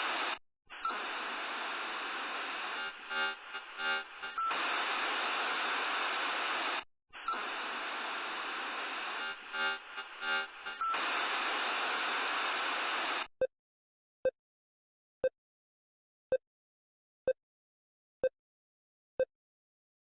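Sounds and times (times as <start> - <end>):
harsh static-like noise: 0.0 - 13.3.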